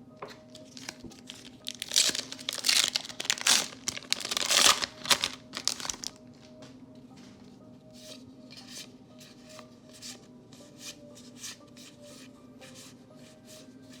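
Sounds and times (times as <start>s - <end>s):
foil wrapper crinkling and tearing: 0.6s - 6.2s.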